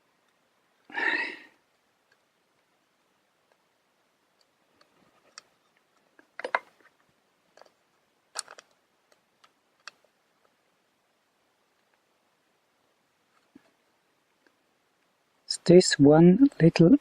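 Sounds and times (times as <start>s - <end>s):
small plastic clicks and taps: 8.4s - 10.6s.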